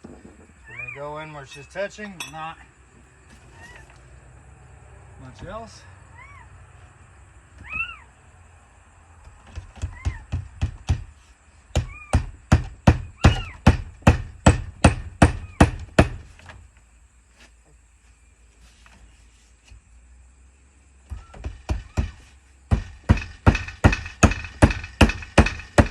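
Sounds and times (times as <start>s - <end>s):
hammer driving nails: 11.7s - 16.3s, 21.1s - 25.9s.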